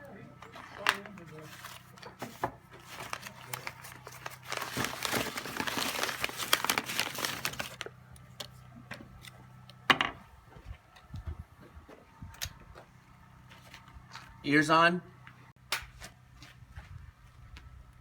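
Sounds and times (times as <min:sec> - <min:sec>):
crinkling handling noise: 0:00.4 - 0:09.8.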